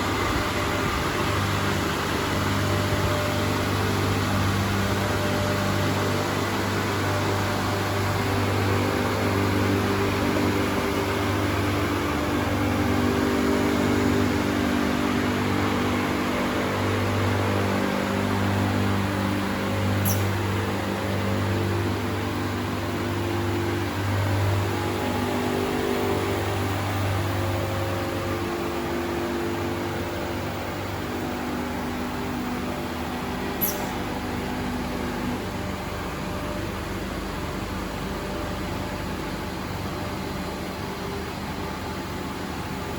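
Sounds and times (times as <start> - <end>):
machine motors humming: 0.0 - 42.9
sharp click: 20.0 - 20.4, 33.6 - 34.0.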